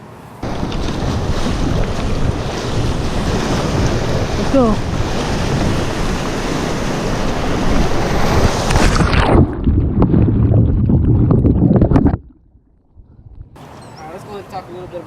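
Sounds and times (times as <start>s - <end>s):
waves splashing: 0.4s - 10.5s, 13.6s - 15.0s
wind buffeting microphone: 0.4s - 13.6s.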